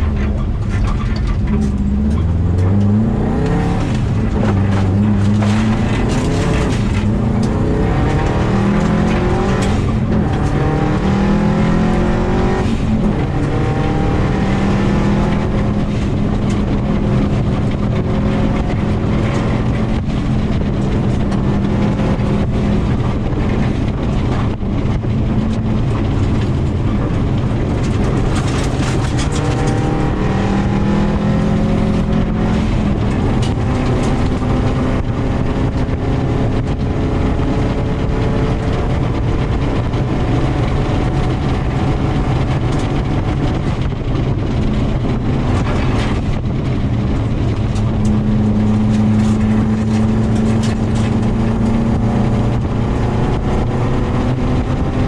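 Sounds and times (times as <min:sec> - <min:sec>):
rally car engine revving: 0:00.0 - 0:55.0
road noise: 0:00.0 - 0:55.0
gravel hitting car body: 0:03.7 - 0:10.8, 0:22.8 - 0:30.8.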